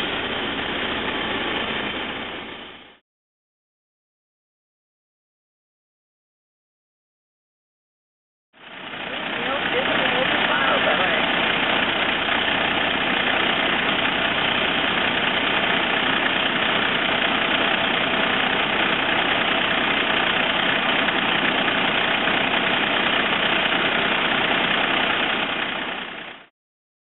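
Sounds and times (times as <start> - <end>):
diesel machinery engine drone: 0.0 - 3.0, 8.6 - 26.5.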